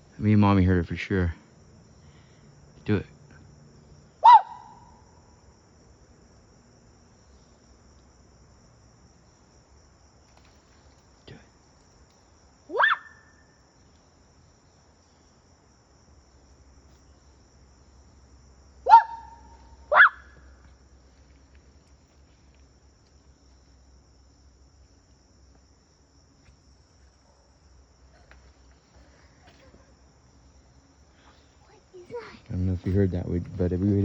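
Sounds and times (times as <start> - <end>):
high insect drone: 0.0 - 34.0
human whoop calls: 12.7 - 13.1.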